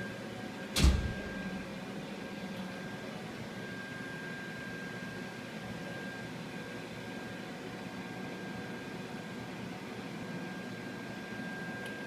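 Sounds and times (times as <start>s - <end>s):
fan humming with faint whine: 0.0s - 12.0s.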